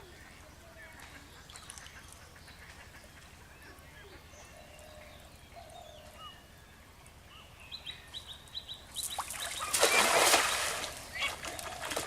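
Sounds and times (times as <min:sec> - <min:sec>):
water splashing: 0:09.0 - 0:12.0.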